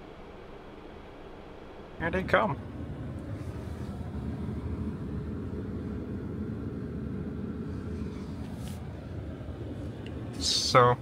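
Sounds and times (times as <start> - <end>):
vehicle engines rumbling: 2.0 - 11.0.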